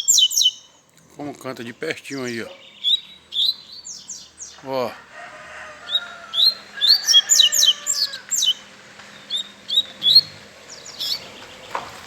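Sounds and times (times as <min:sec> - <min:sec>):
bird singing high whistled notes: 0:00.0 - 0:00.8, 0:02.5 - 0:04.6, 0:05.9 - 0:11.6.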